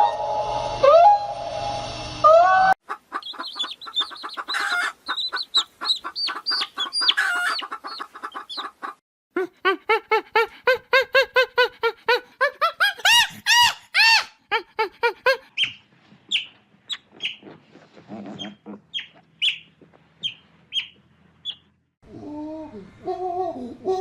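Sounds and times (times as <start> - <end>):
chicken clucking: 2.9 - 9.0, 15.4 - 21.6
chicks peeping: 2.9 - 9.0, 15.5 - 17.6, 18.4 - 21.7.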